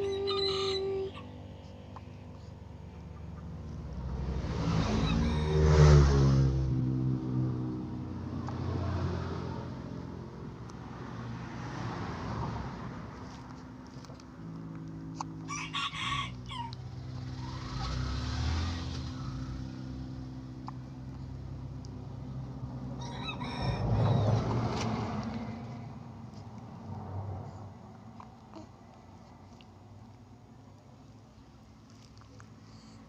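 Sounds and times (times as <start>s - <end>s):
rooster crowing: 0.0s - 1.3s, 4.8s - 6.2s, 15.4s - 17.0s, 23.0s - 24.8s
low motor hum: 16.3s - 33.0s.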